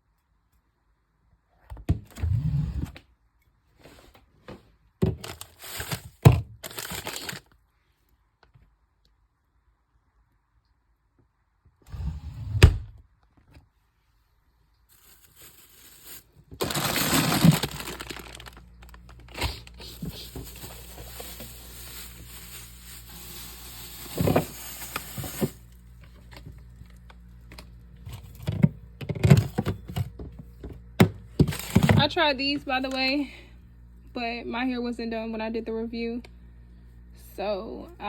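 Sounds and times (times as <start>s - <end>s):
rustling and crinkling: 3.7s - 7.6s, 14.8s - 28.5s, 31.3s - 33.2s
low steady hum: 14.2s - 38.0s.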